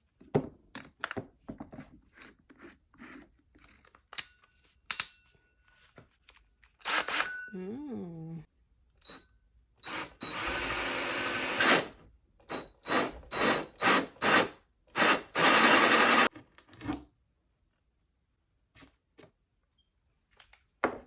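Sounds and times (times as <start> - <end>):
electric drill running in bursts: 6.9 - 7.3, 9.8 - 11.9, 12.5 - 16.3.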